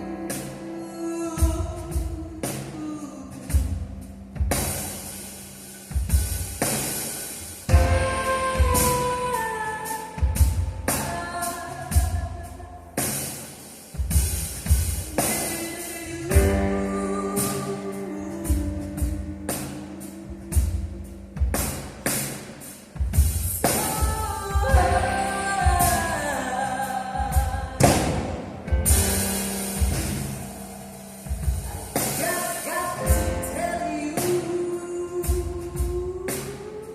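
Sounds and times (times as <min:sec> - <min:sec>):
woman singing: 0:00.0 - 0:03.9, 0:07.7 - 0:13.0, 0:15.0 - 0:21.4, 0:23.6 - 0:29.2, 0:31.6 - 0:36.9
drum kit beat: 0:00.0 - 0:36.9
piano and keyboards: 0:00.0 - 0:36.9.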